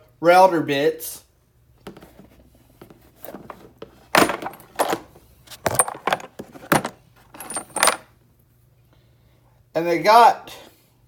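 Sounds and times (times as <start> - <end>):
metal bits clinking and rattling: 3.5 - 8.1.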